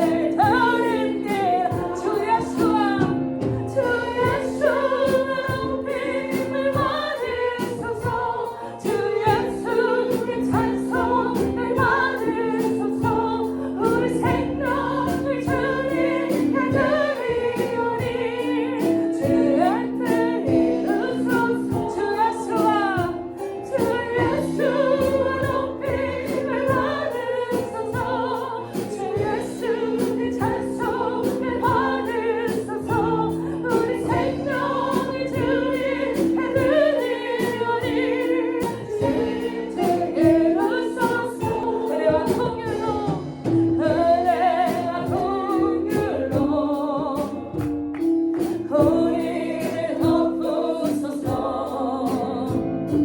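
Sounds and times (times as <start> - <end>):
steady percussive beat: 0.0 - 50.5
group singing worship song: 0.0 - 53.0
instrumental accompaniment: 0.0 - 53.0.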